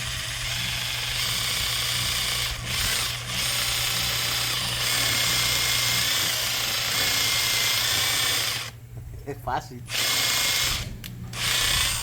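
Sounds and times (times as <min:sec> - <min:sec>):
electric drill whirring: 0:00.0 - 0:08.8, 0:09.9 - 0:12.0.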